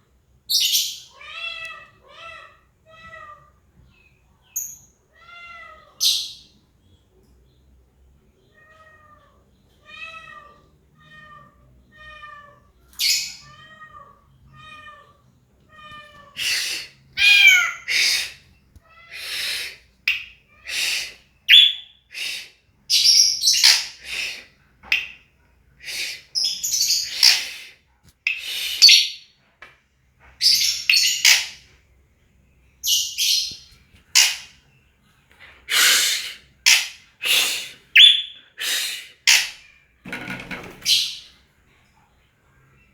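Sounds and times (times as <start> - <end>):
bird calling: 16.3 - 18.5, 35.7 - 39.7.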